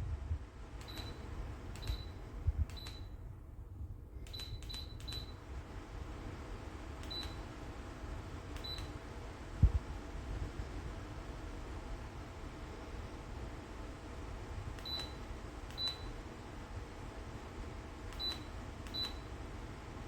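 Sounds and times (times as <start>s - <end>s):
steady low rumble: 0.0s - 19.1s
short high beeps with clicks: 0.8s - 1.2s, 1.8s - 3.2s, 4.3s - 5.4s, 7.0s - 7.4s, 14.8s - 16.1s, 18.2s - 19.2s.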